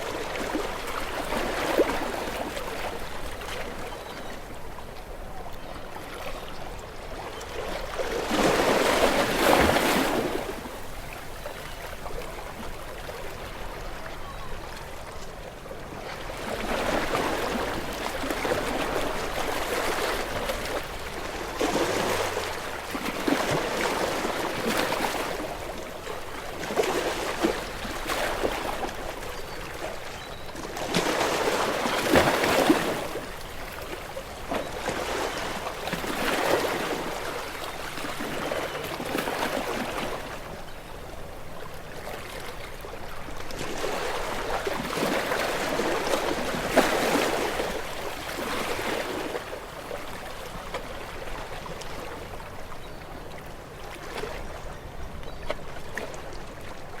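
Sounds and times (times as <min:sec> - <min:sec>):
small waves breaking on beach: 0:05.3 - 0:54.8.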